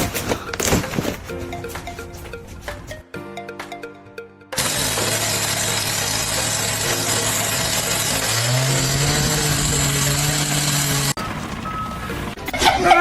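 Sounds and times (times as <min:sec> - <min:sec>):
motor-driven machine whirring: 0:04.6 - 0:11.2.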